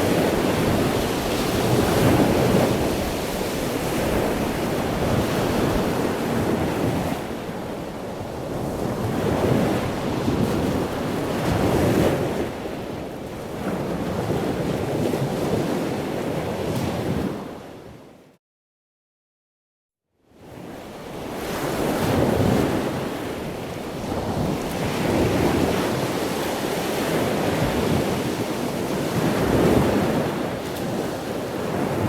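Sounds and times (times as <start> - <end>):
ocean waves breaking: 0.0 - 17.6.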